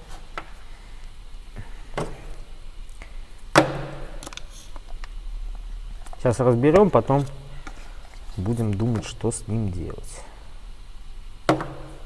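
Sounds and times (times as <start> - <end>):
plastic clicks and knocks: 3.5 - 5.2.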